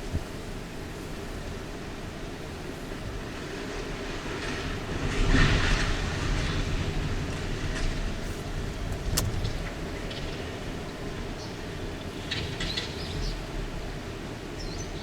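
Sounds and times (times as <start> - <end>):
sharp crack: 8.2 - 10.1.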